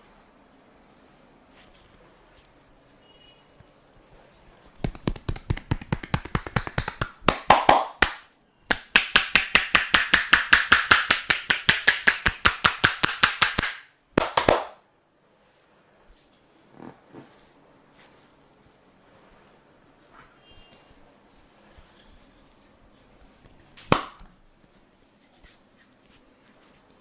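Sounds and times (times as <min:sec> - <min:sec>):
hands slapping on body: 0:04.8 - 0:14.8, 0:23.8 - 0:24.4.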